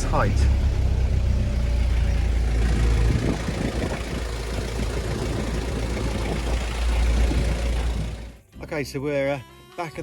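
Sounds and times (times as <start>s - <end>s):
car engine and road noise: 0.0s - 8.5s.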